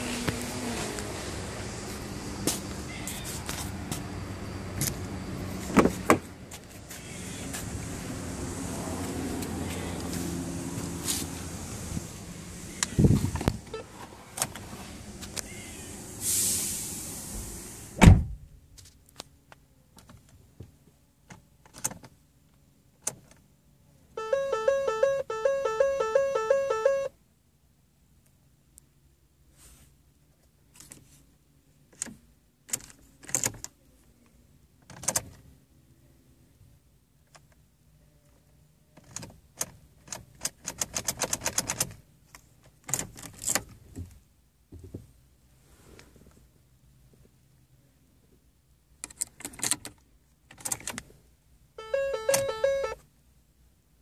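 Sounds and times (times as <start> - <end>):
car door shutting: 12.7 - 18.4
warning chime pulsing: 24.2 - 27.1, 51.8 - 53.0.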